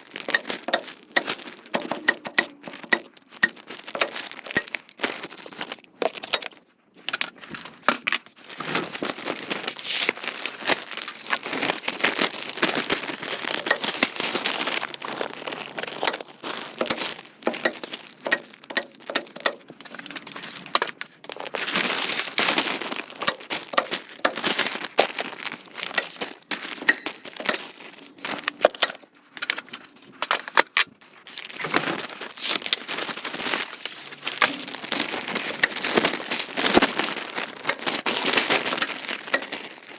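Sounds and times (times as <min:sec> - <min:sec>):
plastic sheeting crinkling: 0:00.0 - 0:06.4, 0:08.4 - 0:29.2, 0:31.1 - 0:39.9
sharp clicks and knocks: 0:00.3 - 0:04.8, 0:13.5 - 0:14.2, 0:16.0 - 0:20.2, 0:23.0 - 0:24.8, 0:25.8 - 0:29.1, 0:34.4 - 0:37.0, 0:37.6 - 0:39.8.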